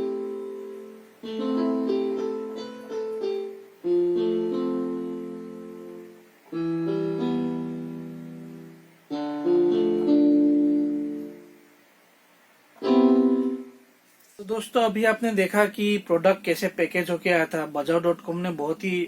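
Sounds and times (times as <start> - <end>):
slow piano chords: 0.0 - 11.8, 12.8 - 13.9.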